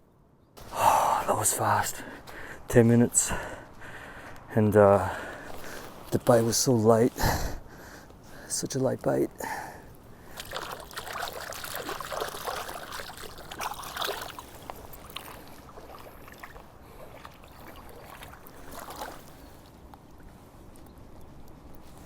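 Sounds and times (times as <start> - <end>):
river water running: 0.6 - 20.8
water splashes: 10.2 - 19.9.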